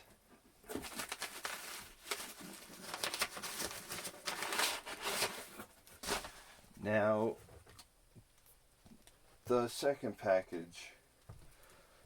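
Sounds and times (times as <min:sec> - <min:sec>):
packaging rustling and crinkling: 0:00.6 - 0:06.6.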